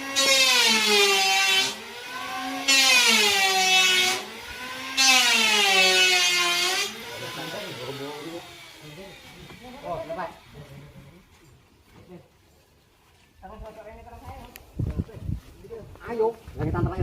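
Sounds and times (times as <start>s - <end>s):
saw motor running: 0.0s - 11.0s
saw cutting wood: 0.0s - 11.3s.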